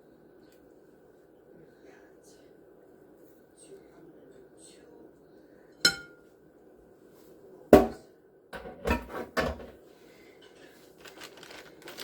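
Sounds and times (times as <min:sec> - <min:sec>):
bowl clinking: 0:05.9 - 0:06.3
kitchen utensils knocking and scraping: 0:08.6 - 0:09.8.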